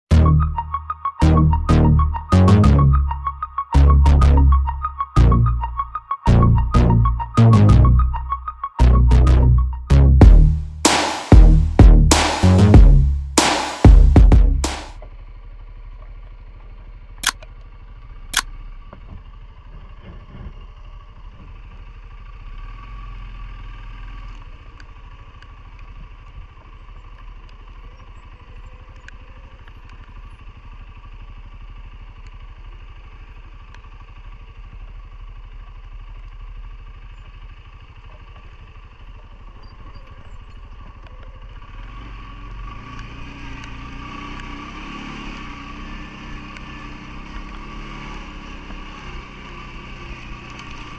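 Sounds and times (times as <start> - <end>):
sharp clicks: 12.1 - 12.7, 14.6 - 14.9
atv engine running: 23.9 - 50.9.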